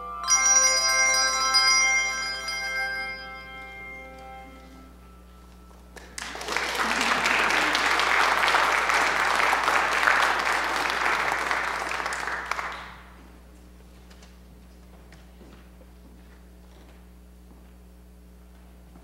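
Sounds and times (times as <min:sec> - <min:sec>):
handbell tones: 0:00.0 - 0:05.7
congregation applauding: 0:06.0 - 0:13.2.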